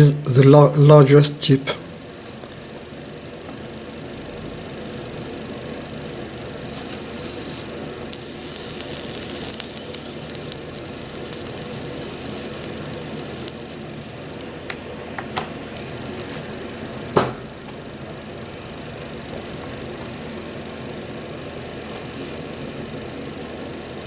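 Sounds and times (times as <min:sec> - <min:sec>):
flux sizzling: 0:04.3 - 0:06.0, 0:08.1 - 0:15.0.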